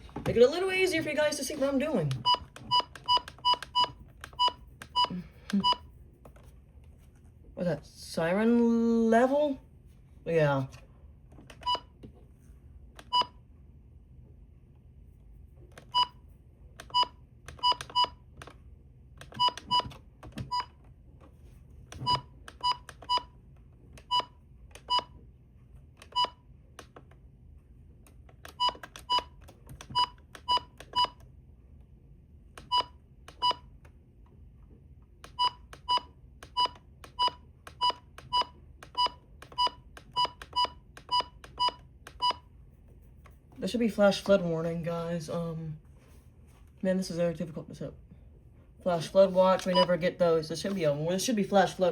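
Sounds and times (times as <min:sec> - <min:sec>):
radio key-press beeps: 0:02.1 - 0:05.9, 0:11.6 - 0:11.9, 0:16.8 - 0:18.2, 0:19.3 - 0:20.8, 0:22.0 - 0:23.3, 0:29.9 - 0:31.2, 0:32.6 - 0:33.6, 0:35.3 - 0:42.4, 0:49.6 - 0:50.0.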